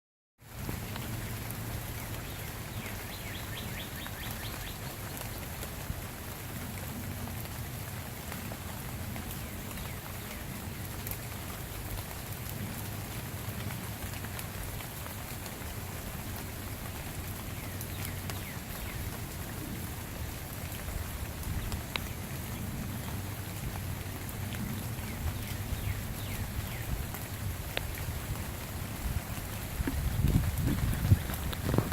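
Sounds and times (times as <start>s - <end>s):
rain pattering: 0.4s - 31.9s
bird chirping: 2.0s - 5.3s.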